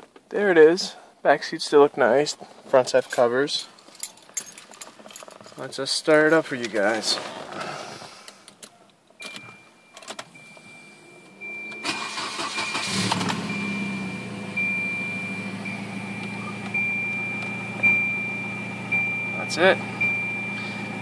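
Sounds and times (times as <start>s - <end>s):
car engine cranking and idling: 2.6s - 21.0s
high steady warning beep: 9.2s - 21.0s.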